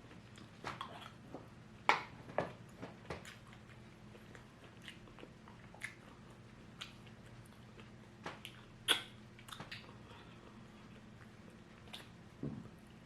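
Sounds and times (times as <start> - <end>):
person chewing crunchy food: 2.8 - 12.2.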